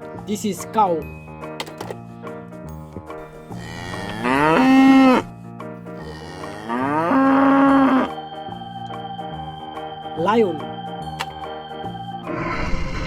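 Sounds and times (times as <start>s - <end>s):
cow mooing: 3.3s - 5.3s, 6.0s - 8.2s.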